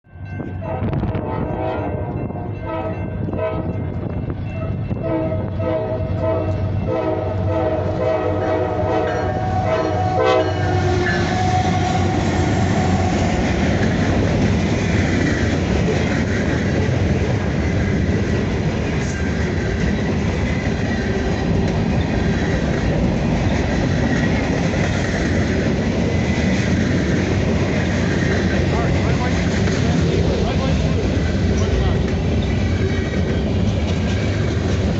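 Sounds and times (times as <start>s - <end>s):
freight train rumble: 0.0s - 34.9s
locomotive air horn blasts: 0.6s - 3.8s, 4.6s - 13.5s.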